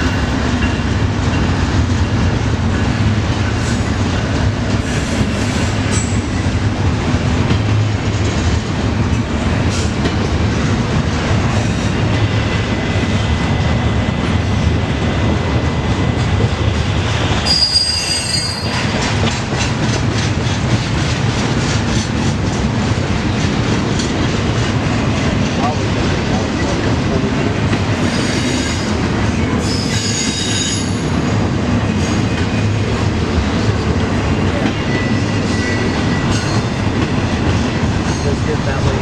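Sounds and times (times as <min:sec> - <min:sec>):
freight train rumbling: 0:00.0 - 0:39.0
wheel squeal: 0:17.4 - 0:18.8, 0:29.6 - 0:31.1
wheels clicking over rail joints: 0:17.5 - 0:28.0.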